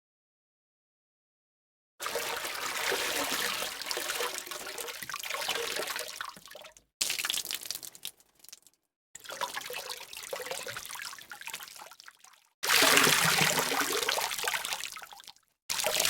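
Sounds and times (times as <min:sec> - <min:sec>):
running water pouring: 0:02.0 - 0:08.7, 0:12.6 - 0:15.0
water trickling and splashing: 0:02.0 - 0:16.0.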